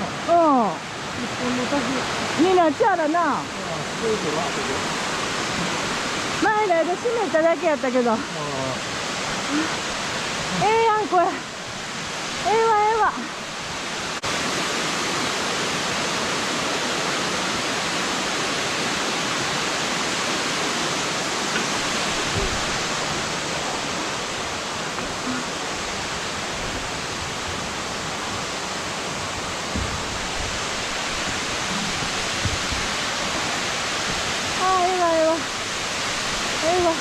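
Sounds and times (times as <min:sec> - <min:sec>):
waterfall rushing: 0:00.0 - 0:37.0
faint low knocks: 0:21.5 - 0:23.2, 0:29.6 - 0:30.6.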